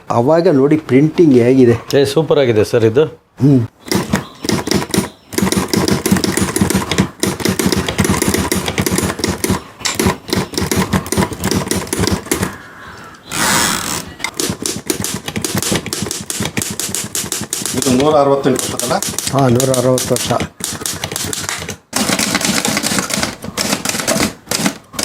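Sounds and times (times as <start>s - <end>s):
manual typewriter typing: 3.8s - 12.6s, 14.3s - 25.0s.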